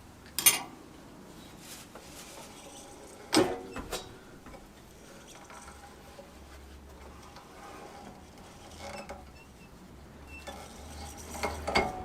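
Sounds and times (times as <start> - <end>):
metal tools clattering: 0.4 - 0.7
faint squeaks: 5.0 - 11.7.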